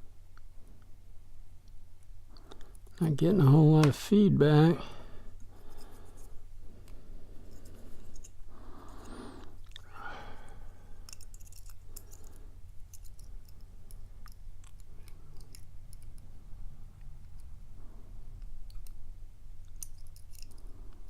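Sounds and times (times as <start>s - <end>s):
steady low hum: 0.0s - 21.0s
lock pick clicking and scraping: 11.0s - 16.3s, 19.6s - 20.8s.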